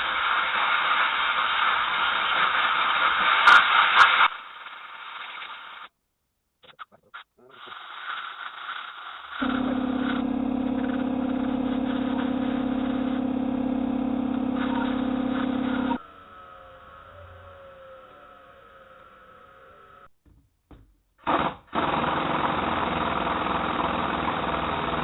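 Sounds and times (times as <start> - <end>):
workshop noise: 9.4 - 16.0
machine humming: 9.4 - 20.1.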